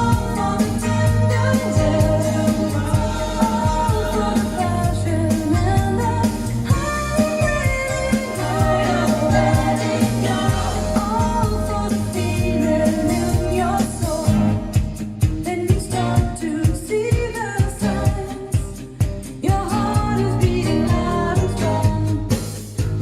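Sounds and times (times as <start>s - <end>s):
person singing melody: 0.0s - 14.8s
bass: 0.0s - 23.0s
steady drum beat: 0.0s - 23.0s.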